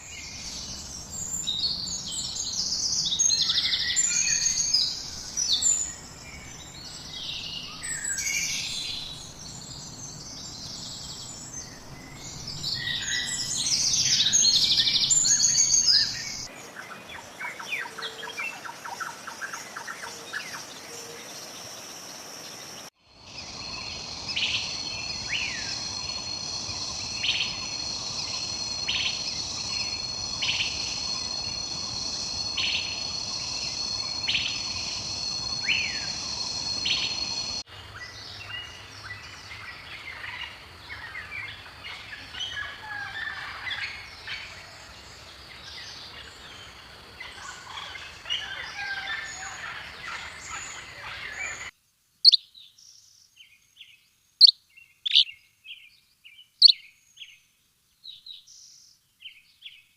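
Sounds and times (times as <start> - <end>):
high insect drone: 0.0 - 51.7
rapid repeated bird trill: 23.3 - 37.6.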